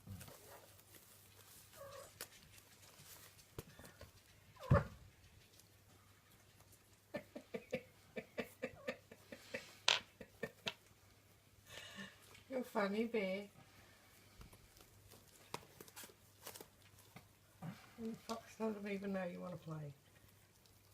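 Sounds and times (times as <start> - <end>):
kittens squeaking: 1.7 - 2.2.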